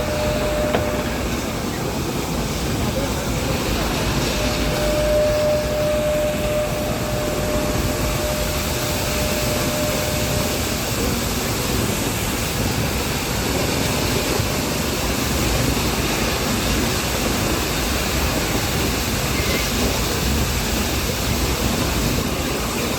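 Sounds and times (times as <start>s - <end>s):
steady high tone: 0.0s - 1.8s, 3.4s - 12.0s.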